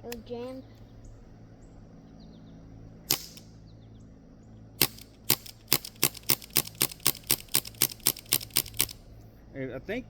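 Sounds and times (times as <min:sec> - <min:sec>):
air pistol firing cracks: 0:03.1 - 0:03.6, 0:04.8 - 0:09.0.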